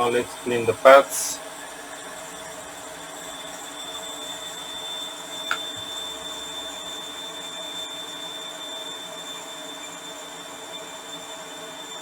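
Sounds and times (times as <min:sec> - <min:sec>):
electric blower fan whirring: 0:00.0 - 0:08.0.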